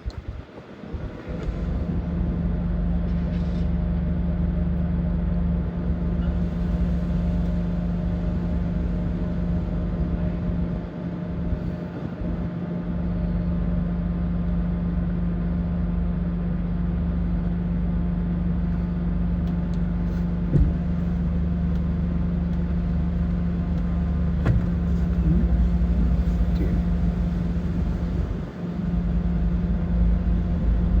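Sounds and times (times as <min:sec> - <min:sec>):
car engine hum inside cabin: 0:00.0 - 0:31.0.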